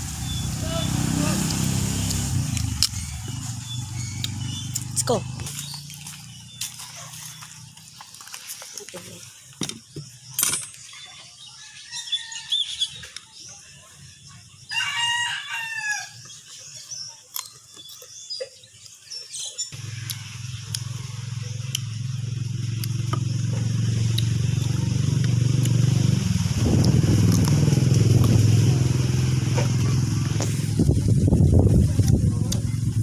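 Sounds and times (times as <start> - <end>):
vehicle engine hum: 0.0 - 11.6, 19.7 - 33.0
rooster crowing: 11.5 - 13.0, 14.7 - 16.2.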